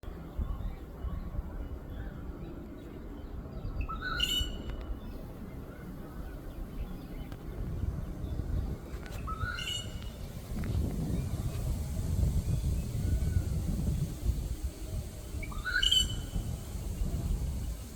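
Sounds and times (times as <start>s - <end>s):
bird calling: 3.8s - 4.8s, 9.1s - 10.3s, 15.4s - 16.4s.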